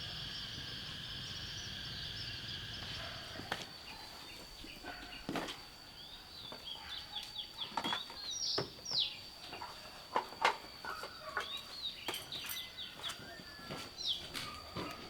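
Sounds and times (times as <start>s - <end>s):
thin high whine: 0.0s - 3.8s
birds chirping: 0.0s - 15.0s.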